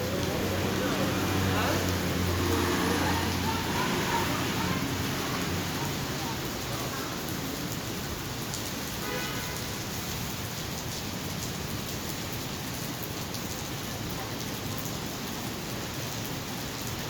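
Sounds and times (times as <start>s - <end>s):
heavy rain hissing: 0.0s - 12.9s.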